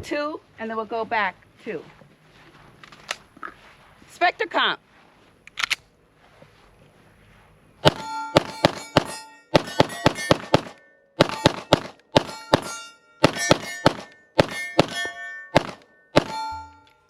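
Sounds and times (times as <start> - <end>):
pistol shots: 7.8 - 16.5
steel targets clanging: 7.8 - 17.0.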